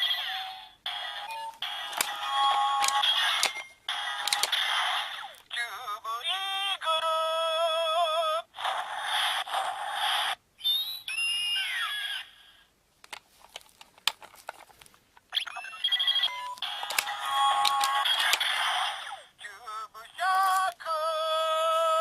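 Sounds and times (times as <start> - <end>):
electronic toy sound effects: 0.0 - 5.6, 10.0 - 12.4, 15.3 - 19.2
clicks: 1.5 - 4.6, 16.4 - 18.5.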